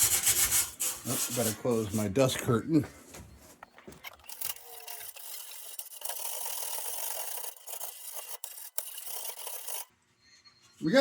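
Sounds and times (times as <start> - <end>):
scrub pad scrubbing sheet metal: 0.0 - 2.3, 4.3 - 9.9.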